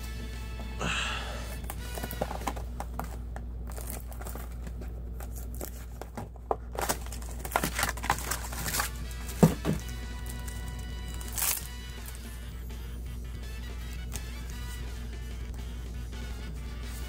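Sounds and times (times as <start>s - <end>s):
foil wrappers crinkling and tearing: 1.6s - 12.5s.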